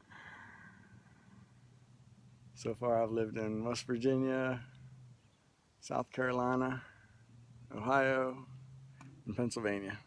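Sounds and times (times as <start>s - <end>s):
faint breathy exhale: 0.0s - 1.4s.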